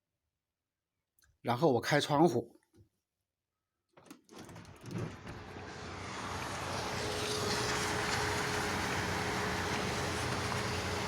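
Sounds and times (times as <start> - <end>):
street traffic: 5.3 - 11.0.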